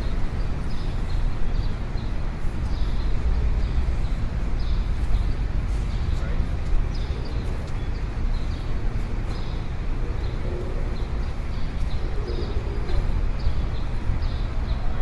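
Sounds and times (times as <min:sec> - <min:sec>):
traffic rumble: 0:00.0 - 0:15.0.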